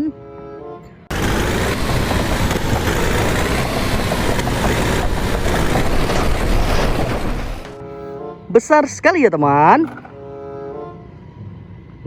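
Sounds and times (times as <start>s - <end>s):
vehicle engine running: 1.1s - 8.1s.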